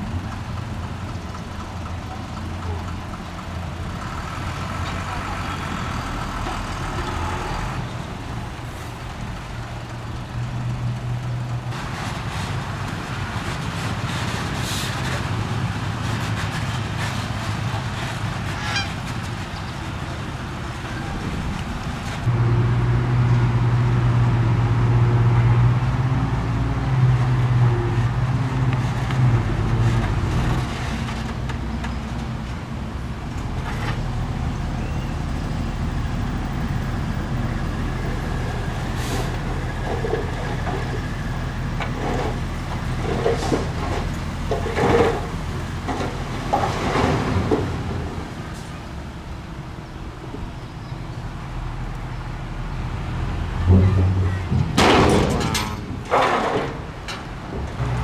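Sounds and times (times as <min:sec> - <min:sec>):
diesel engines running: 0:00.0 - 0:58.0
clanks and rattles: 0:37.9 - 0:48.8, 0:53.5 - 0:58.0
honk-like horn tone: 0:53.6 - 0:54.6.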